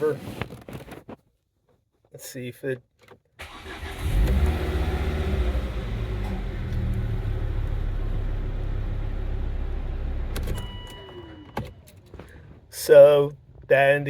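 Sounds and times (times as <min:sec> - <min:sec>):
car engine idling: 0:03.4 - 0:12.6
short electronic tone: 0:10.5 - 0:11.9.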